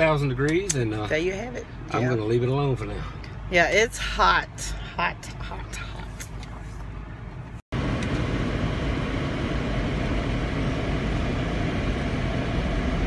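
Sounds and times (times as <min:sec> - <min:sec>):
car engine and road noise: 0:00.0 - 0:13.0
outdoor background noise: 0:00.0 - 0:13.0.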